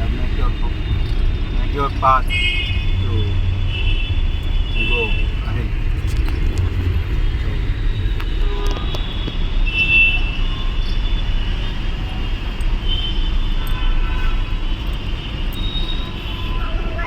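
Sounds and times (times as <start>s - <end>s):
car horns: 0.0s - 17.0s
traffic engines rumbling: 0.0s - 17.0s.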